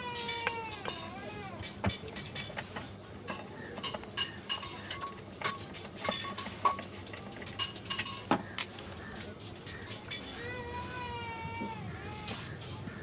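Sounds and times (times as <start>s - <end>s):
light metallic clicks and clinks: 0.2s - 8.4s.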